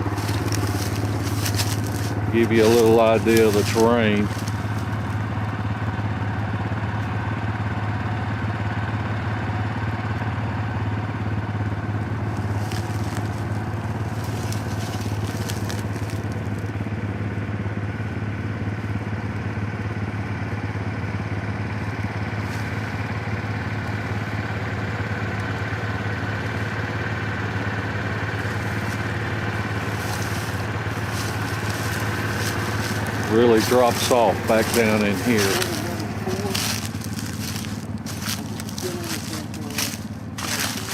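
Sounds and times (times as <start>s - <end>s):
crackling: 0.0s - 5.6s, 12.2s - 16.8s, 28.4s - 40.9s
atv engine running: 0.0s - 40.9s.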